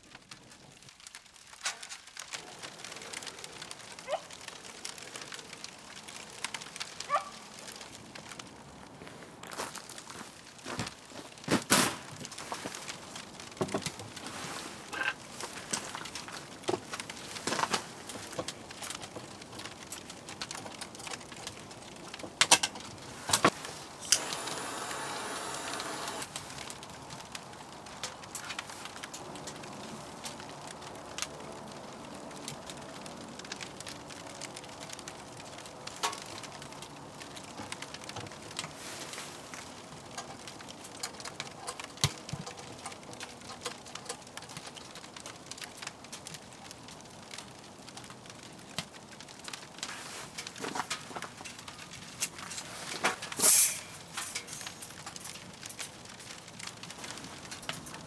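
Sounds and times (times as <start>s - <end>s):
firewood crackling and popping: 0.0s - 58.0s
low hiss: 23.0s - 26.9s.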